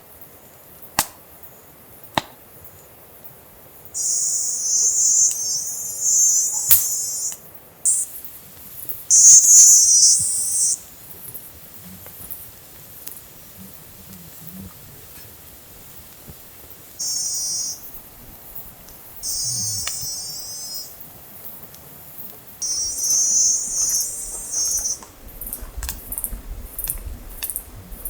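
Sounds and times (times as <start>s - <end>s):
sharp clicks: 1.0s - 1.2s, 22.6s - 27.7s
insect pulsing trill: 4.0s - 21.6s, 22.6s - 28.0s.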